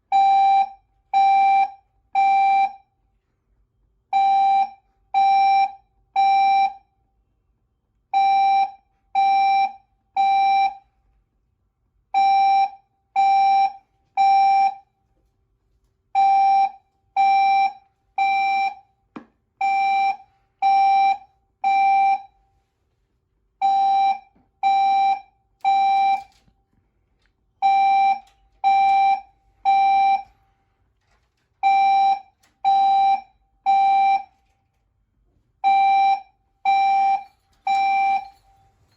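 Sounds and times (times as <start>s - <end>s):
fire alarm tone blasts: 0.1s - 2.9s, 4.1s - 6.9s, 8.2s - 10.9s, 12.2s - 14.9s, 16.2s - 18.9s, 19.6s - 22.4s, 23.6s - 26.4s, 27.6s - 30.4s, 31.6s - 34.5s, 35.6s - 38.9s.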